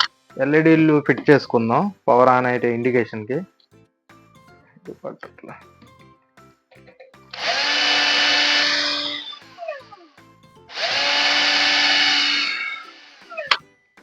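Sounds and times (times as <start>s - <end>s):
electric drill boring holes: 7.4s - 9.9s, 10.7s - 13.6s.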